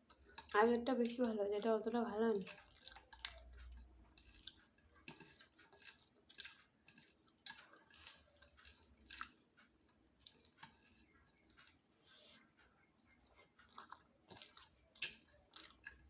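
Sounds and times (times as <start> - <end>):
person chewing: 0.0 - 1.2, 2.4 - 16.0.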